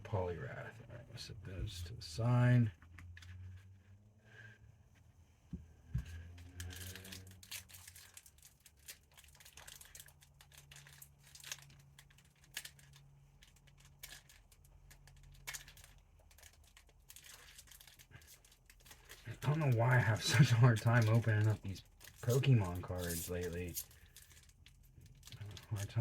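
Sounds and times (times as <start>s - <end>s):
foil wrapper crinkling and tearing: 6.6s - 26.0s.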